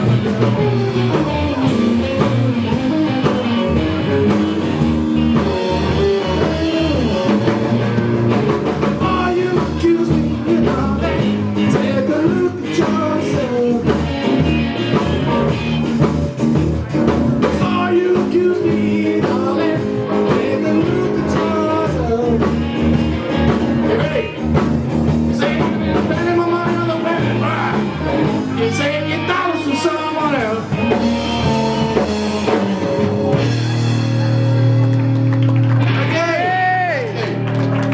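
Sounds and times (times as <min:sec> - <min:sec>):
person singing: 0:00.0 - 0:04.7, 0:05.4 - 0:07.9, 0:08.7 - 0:14.6, 0:17.4 - 0:24.6, 0:25.3 - 0:34.0
rock band playing blues: 0:00.0 - 0:37.9.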